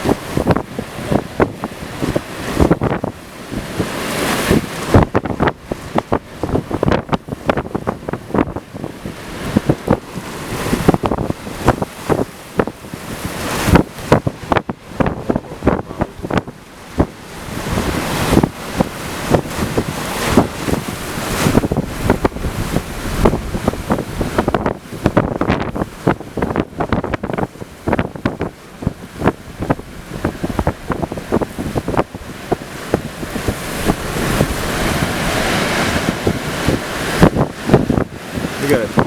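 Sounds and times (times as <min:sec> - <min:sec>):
hurricane winds buffeting microphone: 0:00.0 - 0:39.0.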